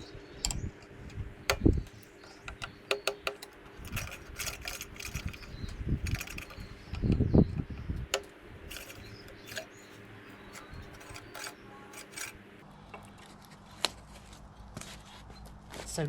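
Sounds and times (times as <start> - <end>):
sharp clicks of tools: 0.4 - 12.4
metal rubbing and scraping: 0.6 - 7.2, 8.0 - 13.4.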